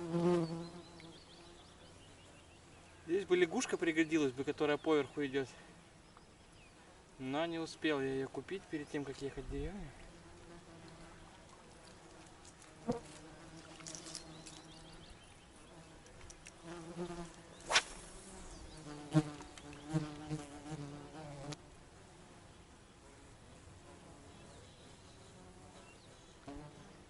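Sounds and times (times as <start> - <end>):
flying insect buzzing: 0.0 - 1.6, 10.1 - 15.1, 15.7 - 21.6.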